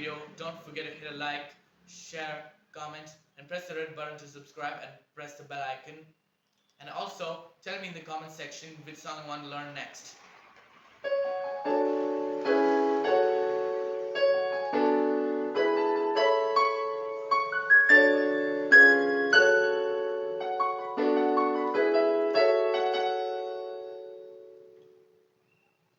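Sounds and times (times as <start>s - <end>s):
electronic keyboard piano playing: 11.0s - 25.4s.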